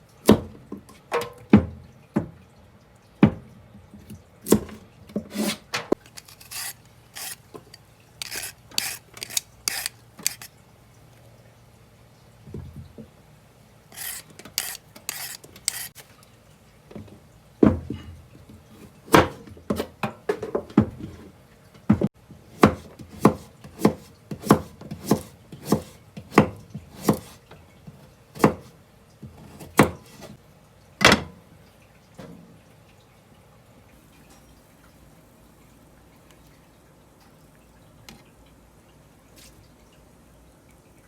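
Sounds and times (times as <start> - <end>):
knife scraping strokes: 5.3 - 10.5, 13.9 - 16.0
knife chopping on cutting board: 8.2 - 10.5, 14.0 - 15.9, 22.6 - 27.3, 28.4 - 28.7.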